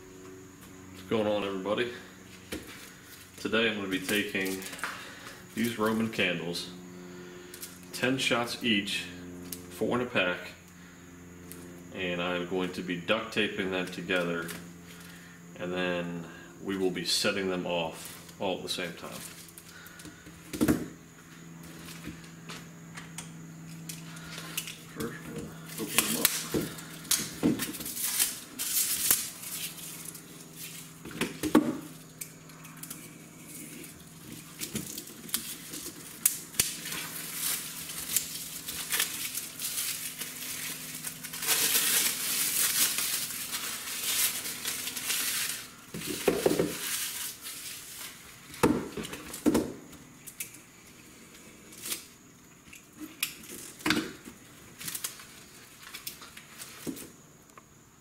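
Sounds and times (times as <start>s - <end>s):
plastic packaging crinkling: 24.1s - 31.1s, 32.1s - 48.2s.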